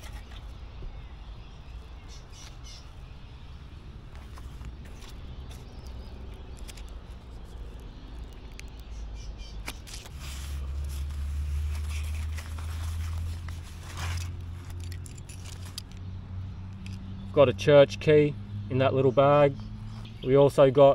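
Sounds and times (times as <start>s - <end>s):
motor vehicle engine drone: 0.0s - 20.9s
small clicks and knocks: 14.0s - 16.1s.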